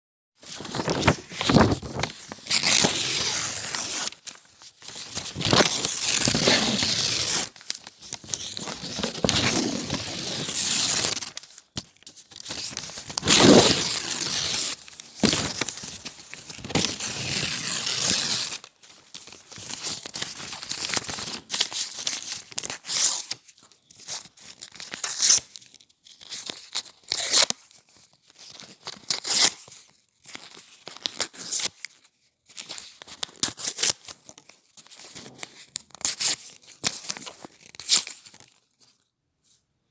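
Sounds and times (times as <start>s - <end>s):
paper crinkling: 0.4s - 11.6s
paper tearing: 0.6s - 4.2s, 5.4s - 7.6s, 13.2s - 15.8s, 16.8s - 18.6s.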